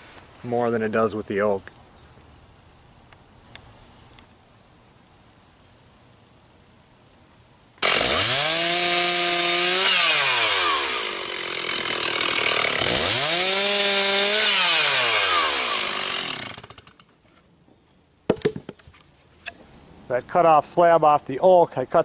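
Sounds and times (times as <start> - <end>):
chainsaw cutting log: 7.8 - 17.1.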